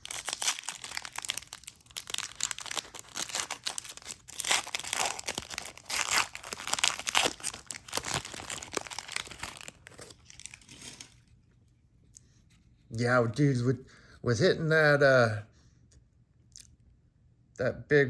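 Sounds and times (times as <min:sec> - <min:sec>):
wrapper tearing and crinkling: 0:00.0 - 0:11.4.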